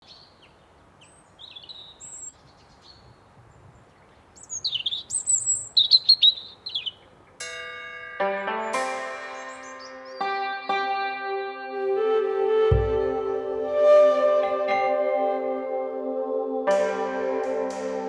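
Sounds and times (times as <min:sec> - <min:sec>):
birds chirping and trilling: 0:00.0 - 0:11.0
plucked-string music: 0:07.4 - 0:15.8.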